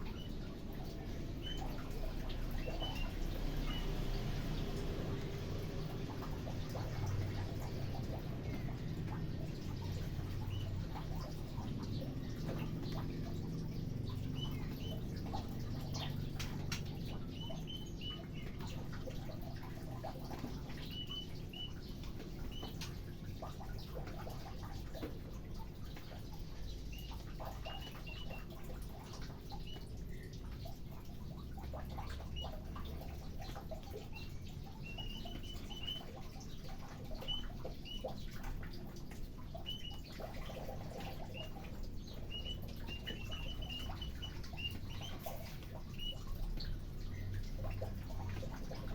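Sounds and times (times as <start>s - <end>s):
birds chirping: 0.0s - 48.9s
low steady hum: 0.0s - 48.9s.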